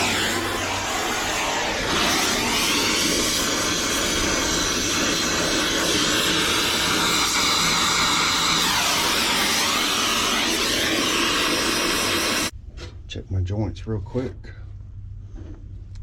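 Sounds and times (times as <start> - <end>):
torch flame hissing: 0.0 - 12.5.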